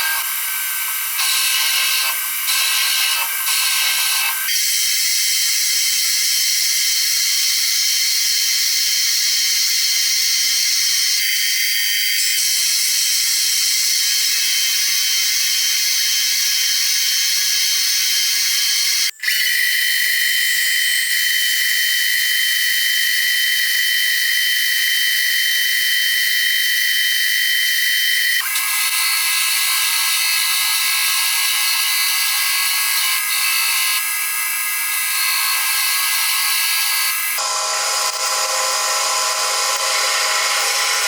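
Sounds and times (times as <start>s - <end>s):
machine tool cutting metal: 0.0s - 6.5s, 28.1s - 41.0s.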